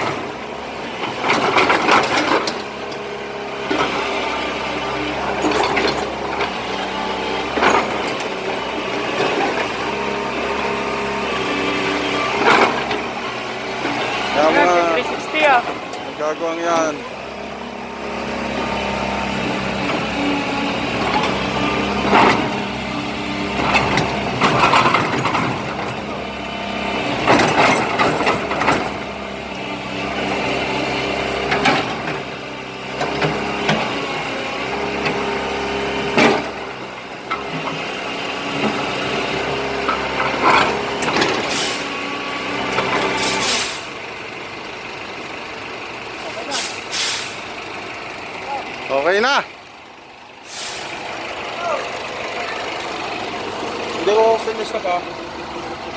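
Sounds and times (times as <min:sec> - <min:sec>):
excavator engine hum: 0:00.0 - 0:55.9
hydraulic hissing bursts: 0:43.2 - 0:43.9, 0:46.5 - 0:47.6, 0:50.4 - 0:51.0.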